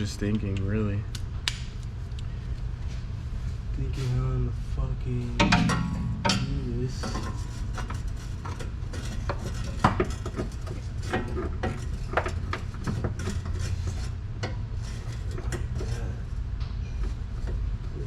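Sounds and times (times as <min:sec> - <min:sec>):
low hum: 0:00.0 - 0:18.0.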